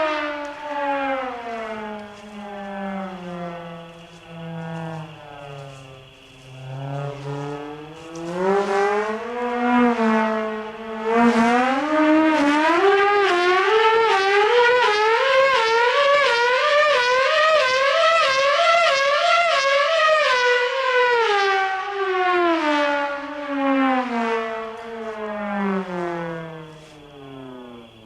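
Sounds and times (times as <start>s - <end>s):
dive siren wailing: 0.0s - 28.0s.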